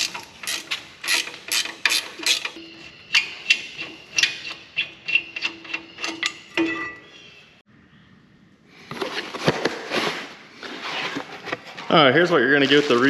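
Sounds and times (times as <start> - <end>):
rustling handling noise: 8.9 - 13.0.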